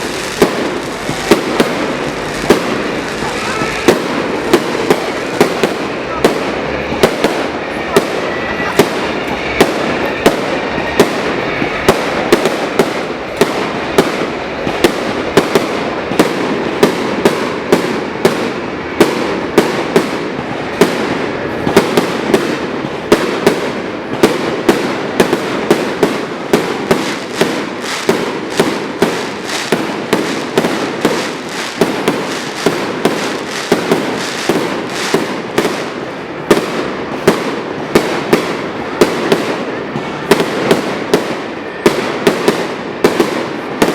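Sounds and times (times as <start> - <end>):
fireworks bangs: 0.0 - 43.9
fireworks crackle: 0.0 - 43.9.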